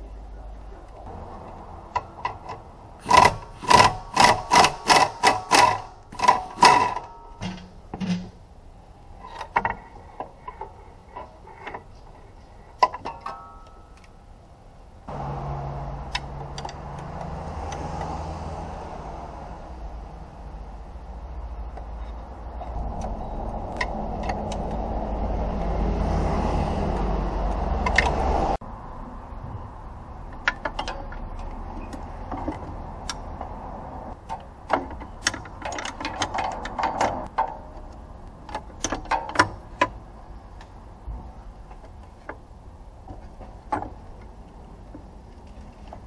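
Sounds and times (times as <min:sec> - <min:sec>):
sharp clicks and knocks: 0:00.9 - 0:08.4, 0:16.0 - 0:18.3, 0:21.6 - 0:25.9, 0:26.9 - 0:28.4, 0:30.3 - 0:42.4, 0:43.0 - 0:46.0.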